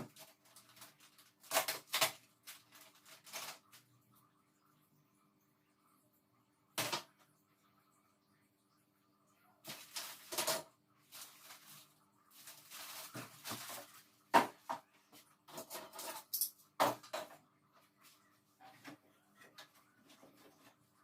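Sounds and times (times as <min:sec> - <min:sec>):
clattering handling noises: 0:15.5 - 0:17.4.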